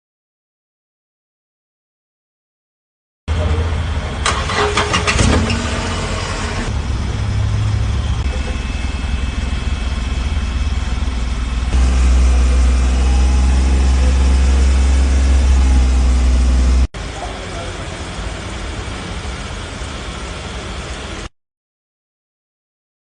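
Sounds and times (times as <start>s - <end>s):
car engine starting and running: 3.3s - 21.3s.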